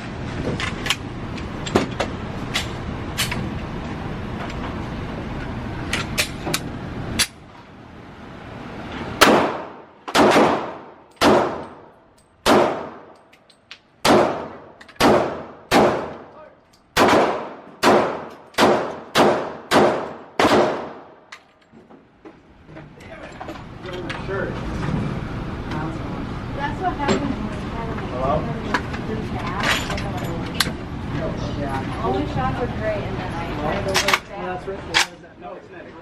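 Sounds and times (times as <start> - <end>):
echoing gunshots: 9.2 - 13.1, 14.0 - 16.3, 17.0 - 21.2.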